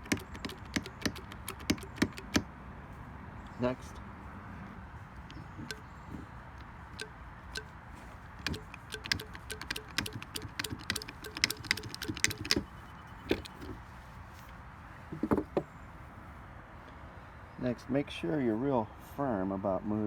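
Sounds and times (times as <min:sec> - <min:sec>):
metallic clicks of cable crimper: 0:00.0 - 0:02.5, 0:05.3 - 0:05.8, 0:06.6 - 0:07.7, 0:08.4 - 0:12.7.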